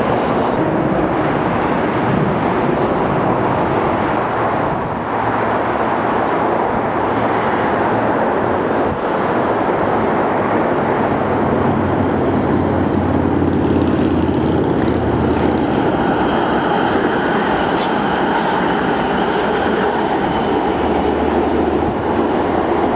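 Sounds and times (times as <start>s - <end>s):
light rail train rumbling: 0.0s - 22.9s.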